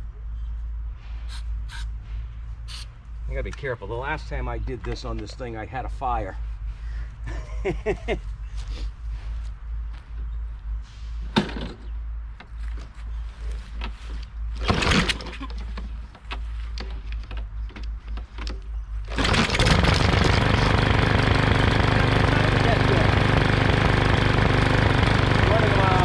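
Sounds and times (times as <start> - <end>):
lawn mower engine idling: 2.7 - 2.9, 19.1 - 26.0
small engine knocks and clatters: 13.7 - 25.8.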